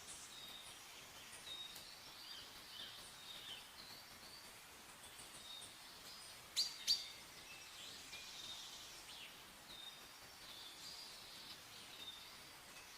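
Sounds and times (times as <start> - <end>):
faint steady hiss: 0.0 - 12.9
small birds chirping: 0.0 - 12.9.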